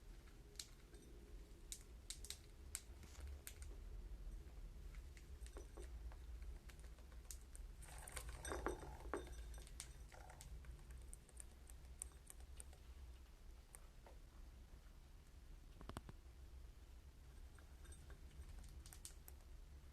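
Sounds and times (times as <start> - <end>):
beaks and claws tapping: 1.7 - 3.8, 18.0 - 19.5.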